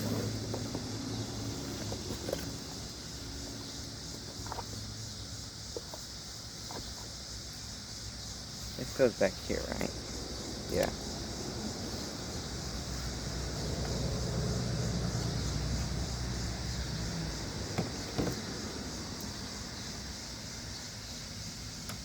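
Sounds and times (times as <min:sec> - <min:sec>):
car passing: 0:08.8 - 0:20.8.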